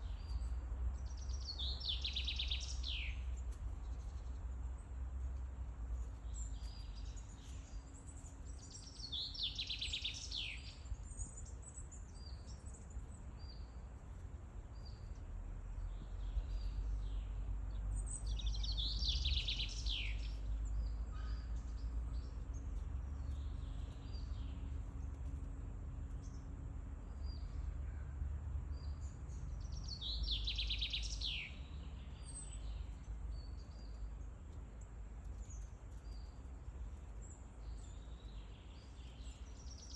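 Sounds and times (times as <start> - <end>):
steady low rumble: 10.7 - 39.8.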